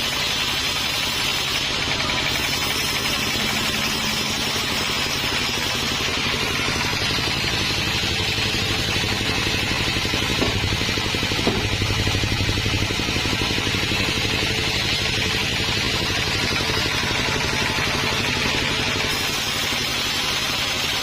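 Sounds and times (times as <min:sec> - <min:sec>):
sawmill machinery droning: 0:00.0 - 0:21.0.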